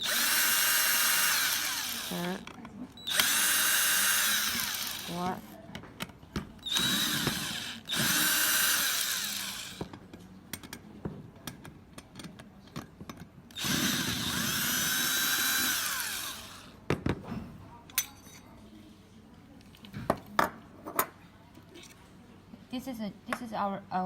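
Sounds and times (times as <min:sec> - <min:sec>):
electric screwdriver running: 0:00.0 - 0:02.5, 0:03.1 - 0:05.5, 0:06.6 - 0:09.9, 0:13.6 - 0:16.8.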